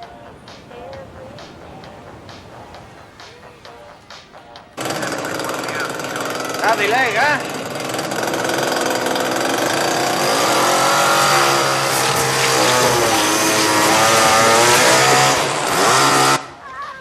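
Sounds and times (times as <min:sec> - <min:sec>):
chainsaw revving: 0:04.8 - 0:16.5.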